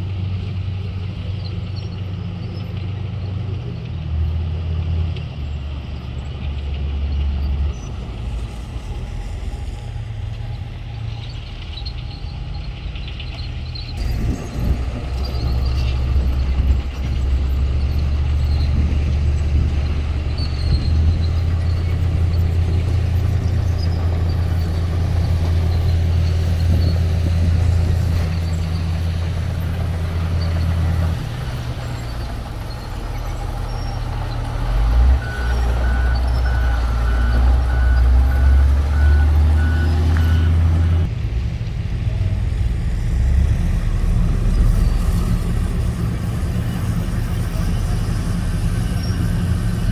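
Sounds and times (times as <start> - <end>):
diesel engine droning: 0.0 - 49.9
reversing alarm beeping: 35.0 - 41.1.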